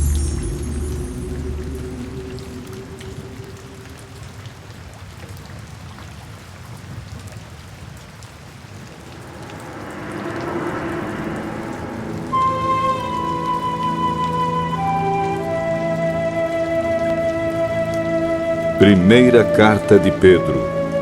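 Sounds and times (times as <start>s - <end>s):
steady rain: 0.0s - 21.0s
soft background music: 9.4s - 21.0s.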